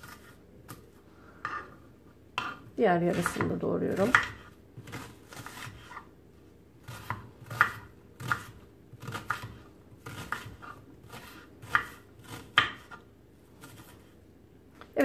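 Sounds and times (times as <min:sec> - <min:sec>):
knife chopping on cutting board: 0:02.4 - 0:06.1, 0:06.8 - 0:13.0.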